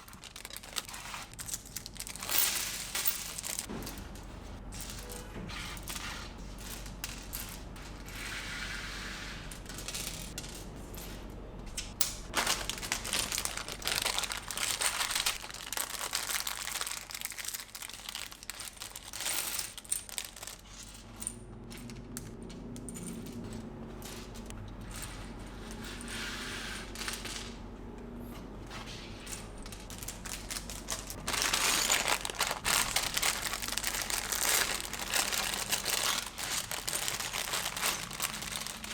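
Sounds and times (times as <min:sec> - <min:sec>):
plastic packaging crinkling: 0:00.0 - 0:03.7, 0:12.3 - 0:20.8, 0:29.5 - 0:38.9.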